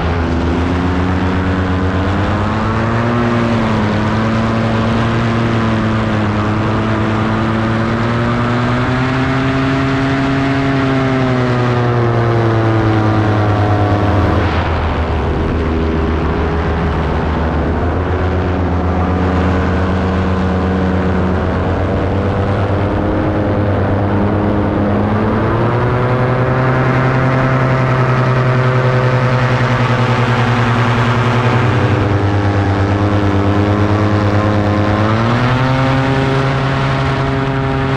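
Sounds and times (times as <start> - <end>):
paramotor engine and propeller: 0.0 - 37.9.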